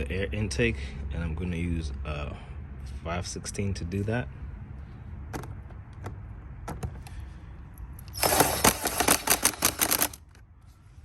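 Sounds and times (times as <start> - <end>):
socket ratchet clicking fast: 8.1 - 10.2.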